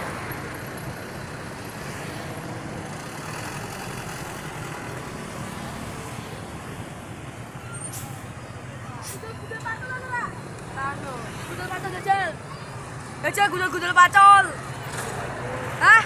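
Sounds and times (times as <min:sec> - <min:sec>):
roadside traffic noise: 0:00.0 - 0:16.0.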